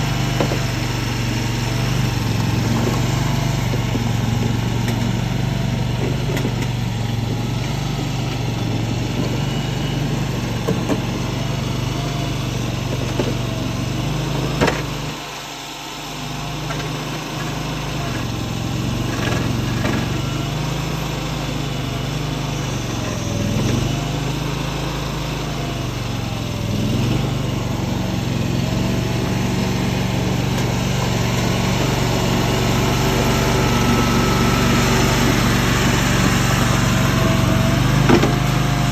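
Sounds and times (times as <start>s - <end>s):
small engine running: 0.0s - 38.9s.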